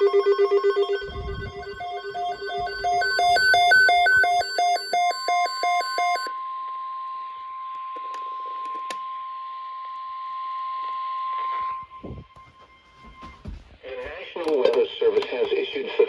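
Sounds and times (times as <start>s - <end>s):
steady alert tone: 0.0s - 4.6s
rapid electronic alert beeps: 0.0s - 6.3s.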